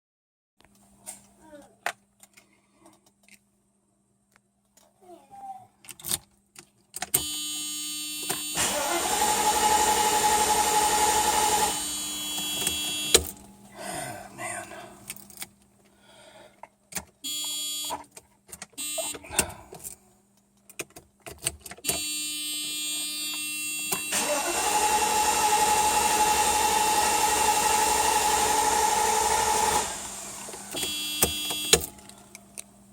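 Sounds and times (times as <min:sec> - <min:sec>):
car starter whining: 0:08.2 - 0:13.5, 0:21.8 - 0:32.4
electronic warning tone: 0:11.6 - 0:13.4, 0:30.7 - 0:31.9.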